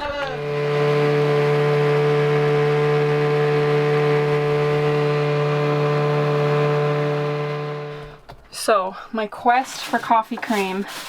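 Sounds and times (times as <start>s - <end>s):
small engine humming steadily: 0.0s - 8.2s.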